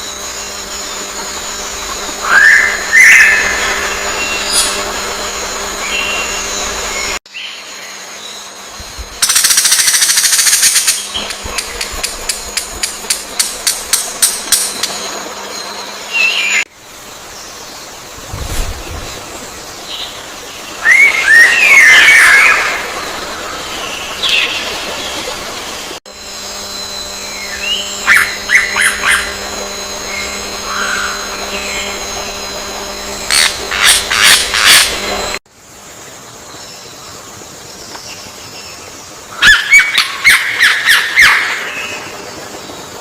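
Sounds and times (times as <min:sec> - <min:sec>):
faint steady hum: 0:00.0 - 0:43.0.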